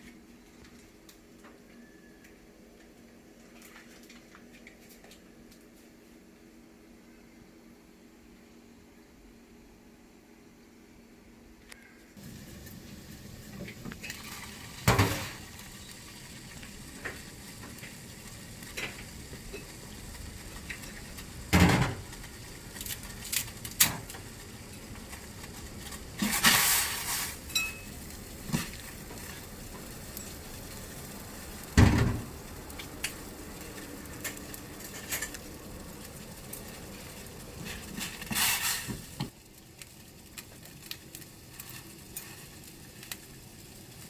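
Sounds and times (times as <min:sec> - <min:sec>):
pot hissing on the heat: 0:12.2 - 0:44.0
pot and utensils clinking: 0:26.2 - 0:28.8.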